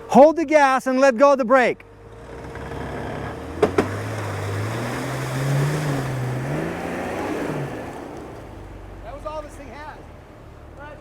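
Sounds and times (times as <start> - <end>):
engine revving hard: 2.0 - 8.8
sharp knocks: 3.6 - 4.3.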